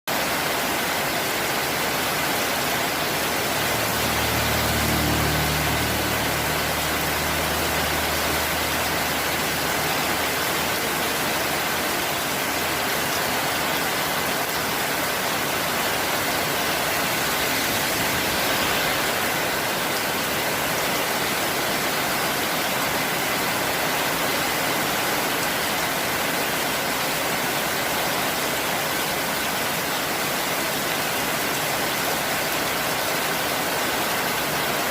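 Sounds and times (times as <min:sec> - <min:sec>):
heavy rain pouring: 0:00.1 - 0:34.9
low engine hum: 0:03.0 - 0:11.8.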